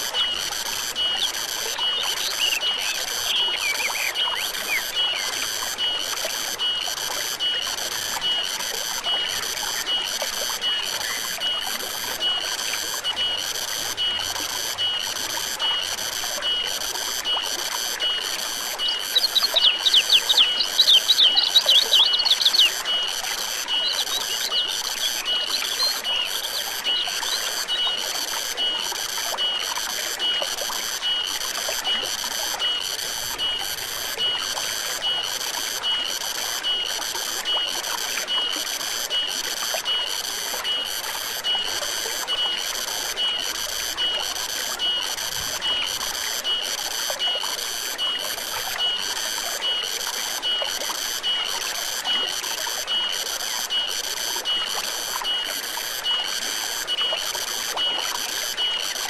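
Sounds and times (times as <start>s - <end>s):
stream flowing: 0.0s - 59.0s
bird chirping: 18.8s - 22.8s
high even chirping: 18.8s - 22.8s.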